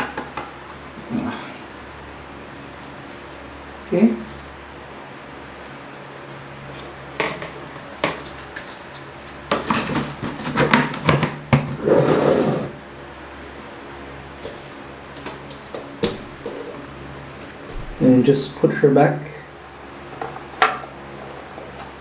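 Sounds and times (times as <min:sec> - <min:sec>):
plastic dustbin rattling: 0:07.2 - 0:12.7.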